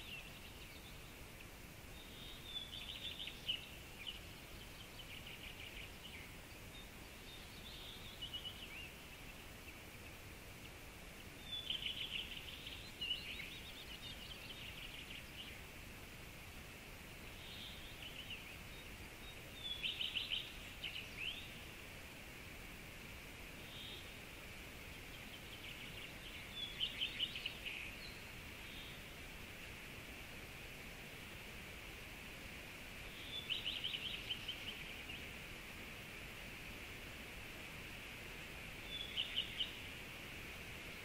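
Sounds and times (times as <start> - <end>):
songbirds singing trilled phrases: 0.0 - 15.7, 17.0 - 21.6, 24.8 - 29.1, 33.0 - 35.5, 38.7 - 40.0
running water hiss: 0.0 - 41.0.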